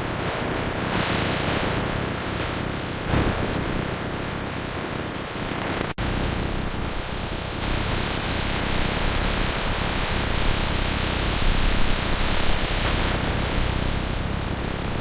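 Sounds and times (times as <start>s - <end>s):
steady hissing noise: 6.0s - 15.0s.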